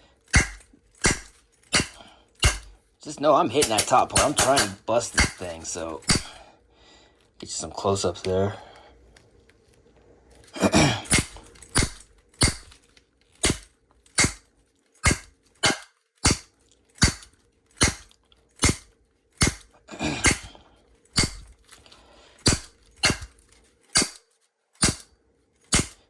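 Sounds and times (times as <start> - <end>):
wood striking padlock: 0.3 - 2.7, 3.6 - 6.4, 13.4 - 20.5, 21.2 - 21.6, 22.4 - 24.2, 24.8 - 25.1.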